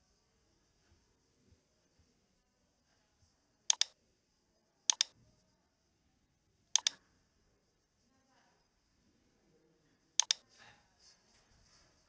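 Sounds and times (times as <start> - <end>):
computer mouse double-clicking: 3.7 - 4.0, 4.9 - 5.1, 6.8 - 7.0, 10.2 - 10.4.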